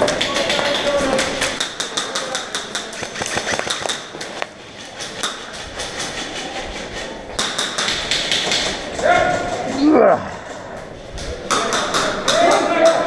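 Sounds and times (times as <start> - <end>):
airsoft guns firing: 0.0 - 5.9, 7.4 - 9.2.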